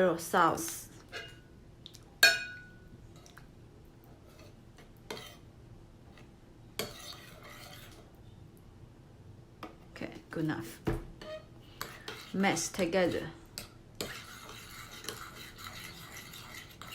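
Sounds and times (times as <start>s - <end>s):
utensil clinking on bowl: 2.2s - 2.8s.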